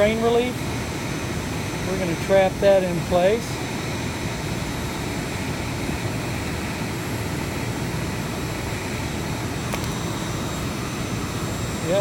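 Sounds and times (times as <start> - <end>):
heat gun blowing hum: 0.0 - 12.0.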